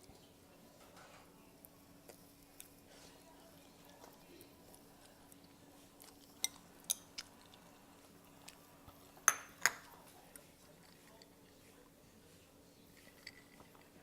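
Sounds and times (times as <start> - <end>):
utensils clinking against dish: 13.0 - 14.0.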